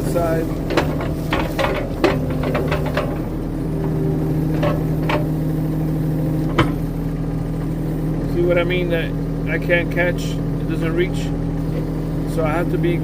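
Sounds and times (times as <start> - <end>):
sharp knocks and clanks: 0.0 - 6.9
excavator engine running: 0.0 - 13.0.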